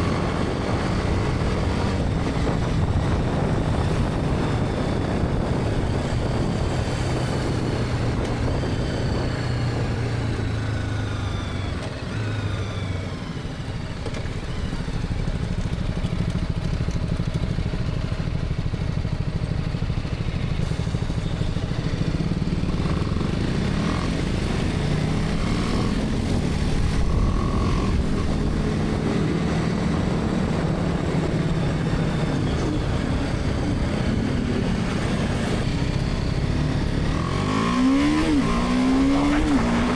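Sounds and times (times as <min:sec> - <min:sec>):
wind noise: 0:00.0 - 0:12.5, 0:20.6 - 0:39.9
motorcycle engine: 0:00.0 - 0:39.9
road noise: 0:00.0 - 0:39.9.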